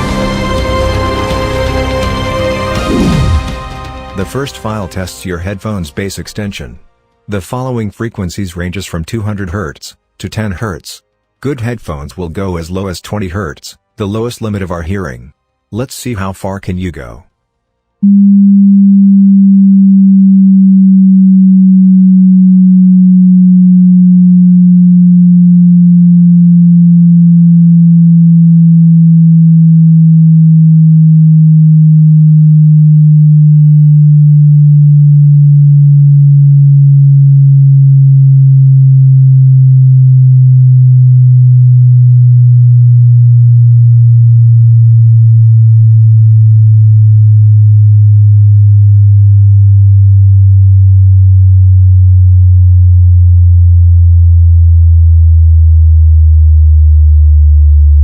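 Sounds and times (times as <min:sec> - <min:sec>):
sine test tone: 0:18.0 - 0:58.0.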